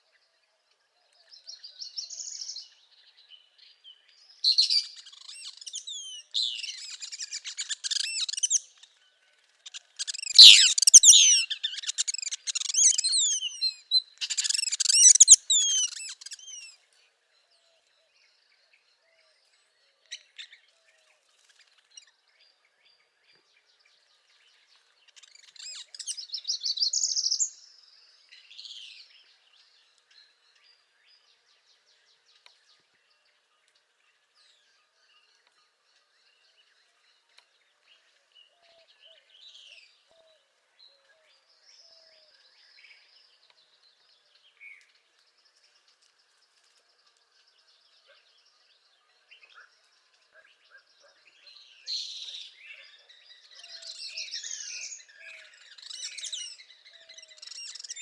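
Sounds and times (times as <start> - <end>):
bird singing high-pitched song: 1.3 - 9.0, 9.6 - 16.8, 23.3 - 33.3, 46.9 - 58.0.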